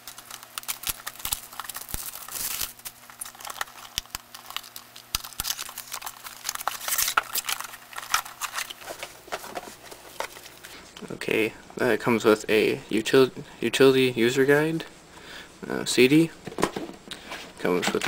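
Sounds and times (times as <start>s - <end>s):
plastic and paper crinkling: 0.0s - 10.8s.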